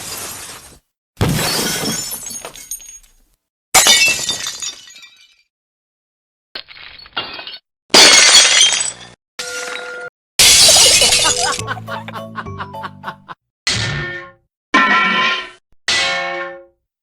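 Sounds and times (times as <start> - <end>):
glass smashing: 6.6 - 9.2, 10.4 - 11.6.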